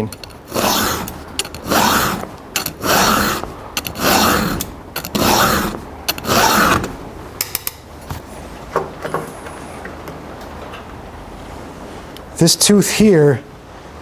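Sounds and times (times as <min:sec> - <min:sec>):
file rasping on chain tooth: 0:00.0 - 0:07.0.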